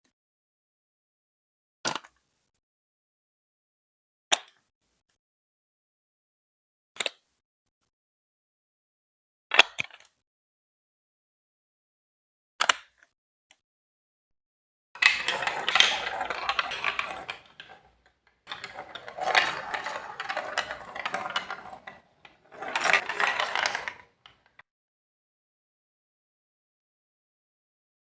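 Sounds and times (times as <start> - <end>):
marble run clicks: 15.0 - 24.4.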